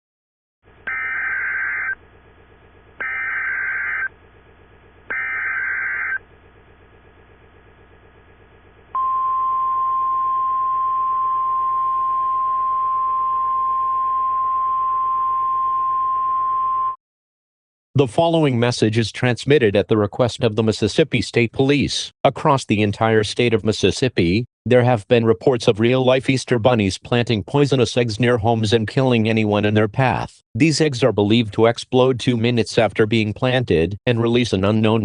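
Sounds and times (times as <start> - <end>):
warbling digital data tones: 0.9 - 2.0, 5.1 - 6.2.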